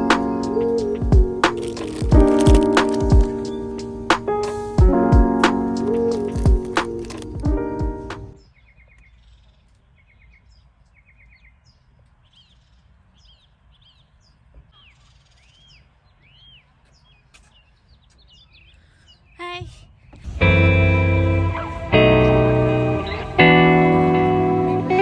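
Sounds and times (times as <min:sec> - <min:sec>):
music: 0:00.0 - 0:08.4, 0:20.3 - 0:25.0
small birds chirping: 0:00.0 - 0:21.4.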